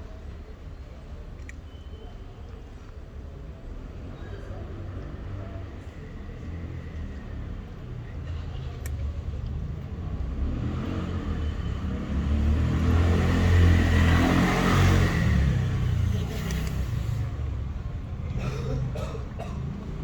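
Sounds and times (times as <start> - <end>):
vehicle driving past: 10.2 - 16.6.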